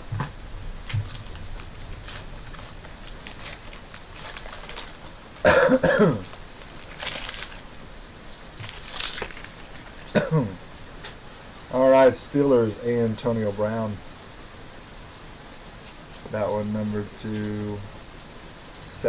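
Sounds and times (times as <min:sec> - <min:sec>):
rain hiss: 0:00.0 - 0:19.0
person coughing: 0:05.4 - 0:06.3, 0:10.1 - 0:10.6.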